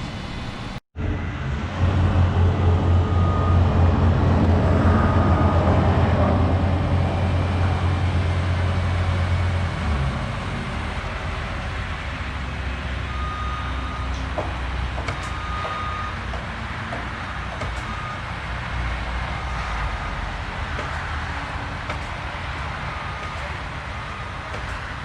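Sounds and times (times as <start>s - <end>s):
diesel machinery rumbling: 0.0s - 25.0s
reversing alarm beeping: 2.1s - 9.5s, 12.7s - 25.0s
sharp knocks: 14.2s - 18.0s, 20.7s - 22.4s.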